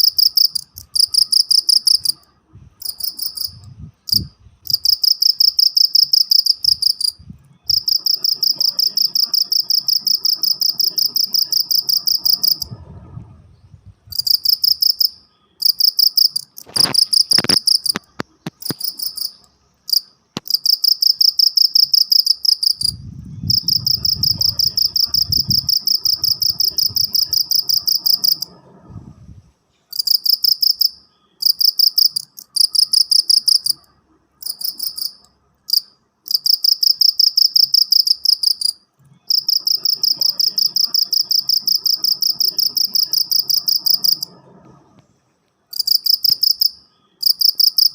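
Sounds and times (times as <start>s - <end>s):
cricket chirping: 0.0s - 12.9s, 14.1s - 28.9s, 29.9s - 44.8s, 45.7s - 47.9s
low rumble: 7.1s - 14.6s, 22.8s - 29.7s, 41.6s - 45.7s.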